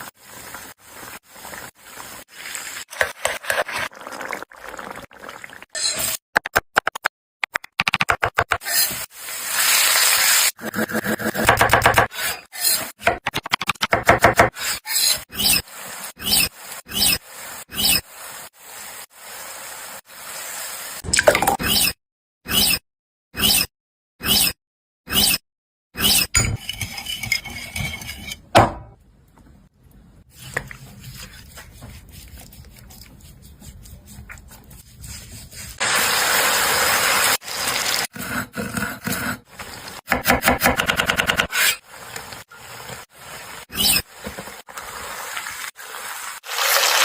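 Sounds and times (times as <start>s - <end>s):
utensils scraping and clinking dishes: 26.3s - 28.5s.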